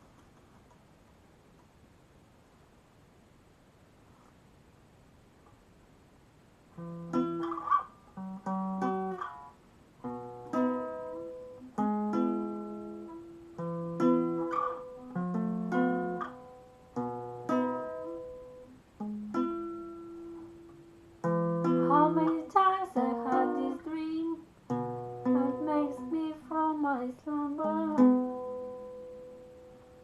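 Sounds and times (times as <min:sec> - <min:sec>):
guitar chords picked: 0:10.0 - 0:30.0.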